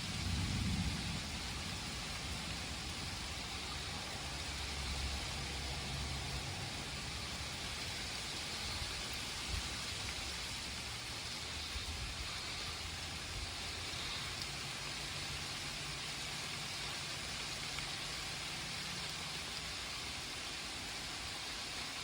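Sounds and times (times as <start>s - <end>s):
thunderstorm rain falling: 0.0s - 14.4s.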